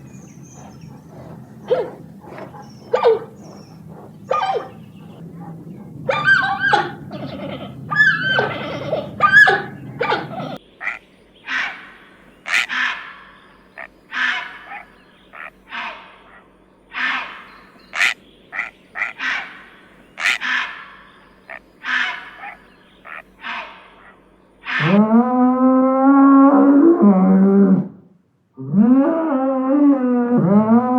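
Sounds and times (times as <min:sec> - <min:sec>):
animal giving harsh calls: 0:00.0 - 0:28.0
dog whining and yelping: 0:00.1 - 0:10.6.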